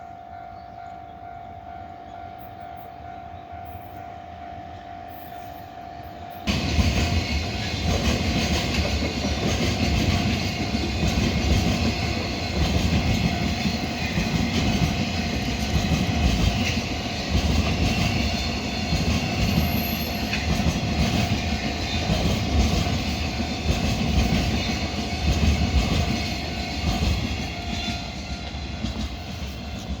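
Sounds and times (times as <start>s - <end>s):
train wheels clattering over rail joints: 6.5s - 30.0s.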